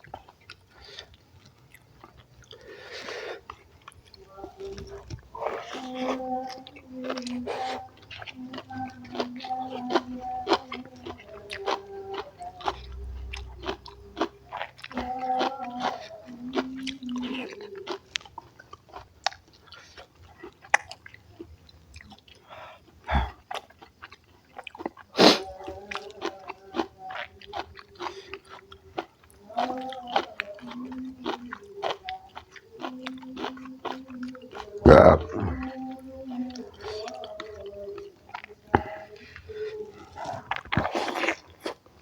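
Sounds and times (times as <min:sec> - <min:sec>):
chewing and mouth smacking: 0:00.0 - 0:42.0.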